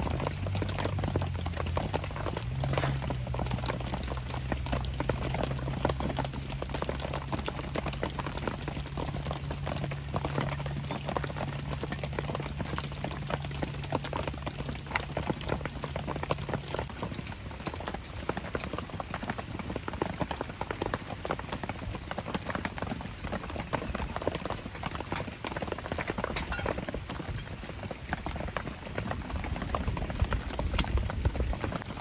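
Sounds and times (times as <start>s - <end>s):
campfire crackling: 0.0s - 32.0s
rain pattering: 0.0s - 32.0s
low steady hum: 26.0s - 27.6s.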